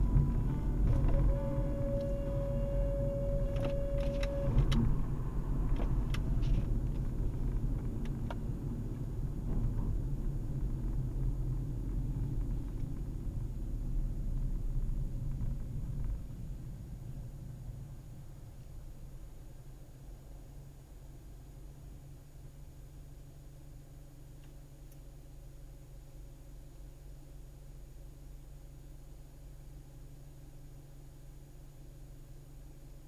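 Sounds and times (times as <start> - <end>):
steady whine: 0.0 - 13.6
car engine rumbling: 0.0 - 33.0.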